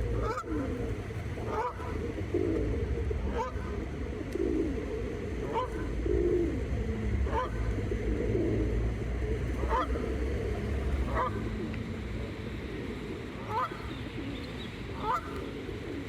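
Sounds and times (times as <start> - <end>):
geese honking: 0.0 - 2.1, 3.2 - 3.9, 5.4 - 6.0, 7.2 - 7.7, 9.6 - 11.7, 13.2 - 16.0
softer lower goose calls: 0.0 - 6.6, 7.2 - 7.7, 8.3 - 16.0
low rumble: 0.0 - 15.1.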